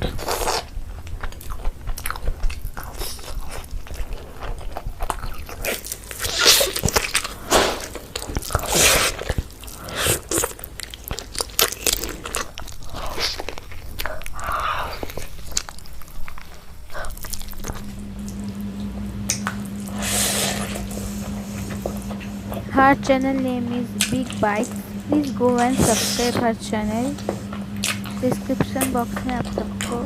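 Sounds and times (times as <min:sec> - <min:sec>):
person crunching and chewing: 0:00.0 - 0:07.4.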